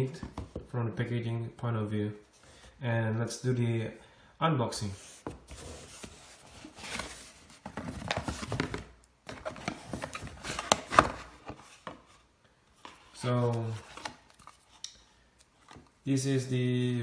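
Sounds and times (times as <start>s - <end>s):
packaging rustling and scraping: 5.2s - 12.2s.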